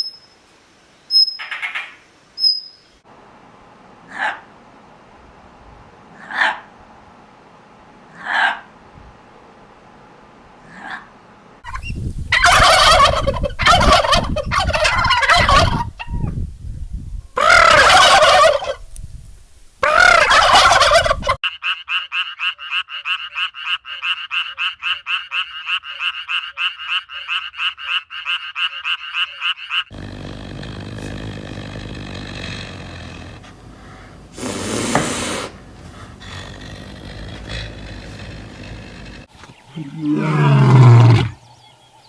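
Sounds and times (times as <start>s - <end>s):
turkey gobbling: 8.2s - 8.7s, 11.7s - 16.3s, 17.4s - 18.8s, 19.8s - 21.4s
rapid pulsing call: 17.4s - 18.8s, 19.8s - 21.4s, 29.9s - 42.0s
rasping sound: 29.9s - 39.3s.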